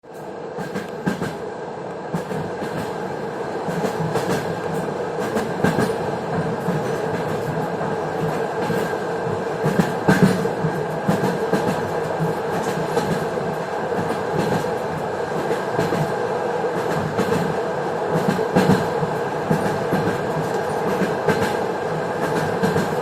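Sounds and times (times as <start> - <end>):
train wheels clattering: 3.6 - 9.0, 9.6 - 13.3, 16.8 - 21.6, 22.2 - 23.0.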